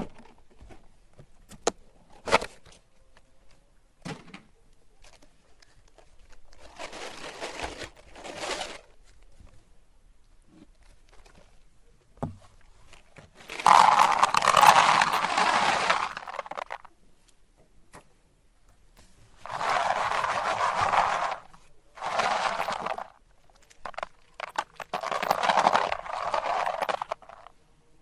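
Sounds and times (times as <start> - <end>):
meat grinder grinding hard candy: 13.5 - 16.8, 19.5 - 23.2, 23.9 - 27.5.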